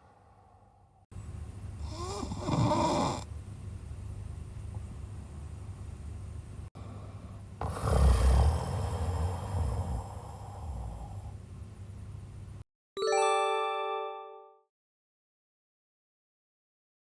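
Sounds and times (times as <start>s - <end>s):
person snoring: 1.8s - 3.3s, 6.8s - 11.4s
bell-like chime: 13.0s - 14.6s.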